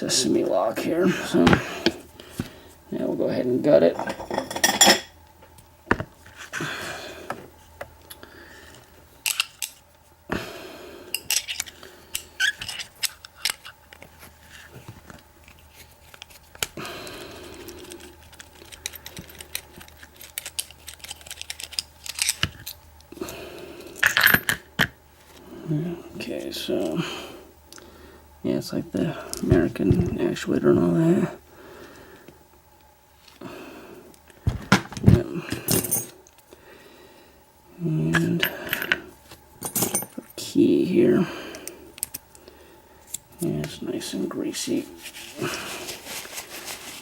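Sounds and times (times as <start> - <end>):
padlock parts clicking and scraping: 9.2 - 9.8, 11.2 - 14.7, 17.6 - 22.8.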